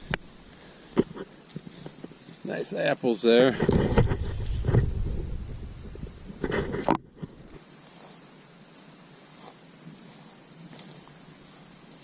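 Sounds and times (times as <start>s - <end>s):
muffled handling rustle: 0.0s - 8.2s
insect chirping: 0.0s - 12.0s
insects droning: 0.0s - 12.0s.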